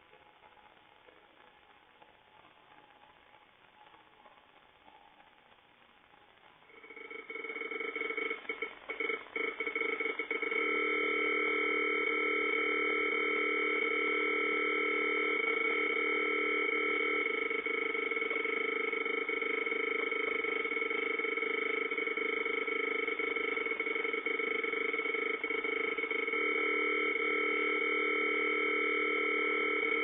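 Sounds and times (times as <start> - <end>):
electronic alarm chord: 6.7 - 30.0.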